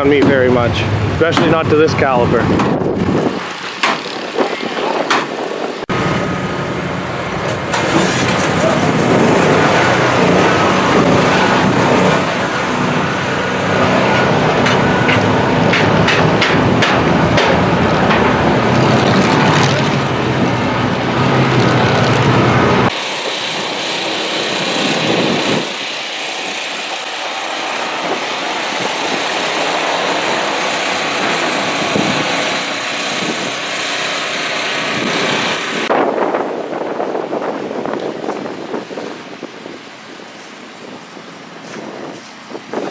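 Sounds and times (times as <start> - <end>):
car engines running loud: 0.0 - 42.9
thin light engine noise: 3.4 - 36.0
sharp knocks: 3.8 - 4.2, 5.0 - 5.3.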